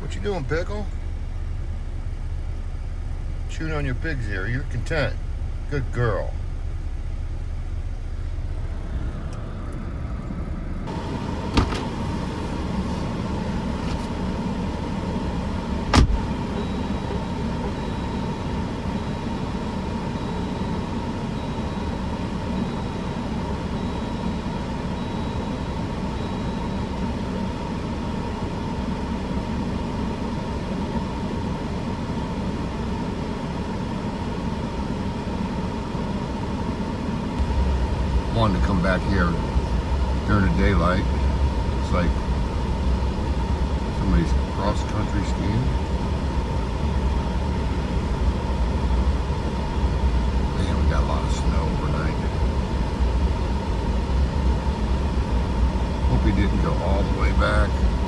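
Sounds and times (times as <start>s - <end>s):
idling vehicle engine: 0.0s - 58.0s
steady whine: 0.0s - 58.0s.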